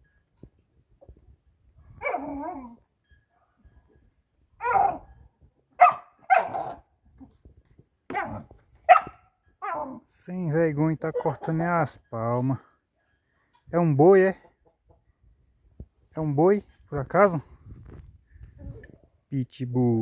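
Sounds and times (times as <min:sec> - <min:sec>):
dog barking: 0:04.6 - 0:05.1, 0:05.8 - 0:06.8, 0:08.1 - 0:10.0.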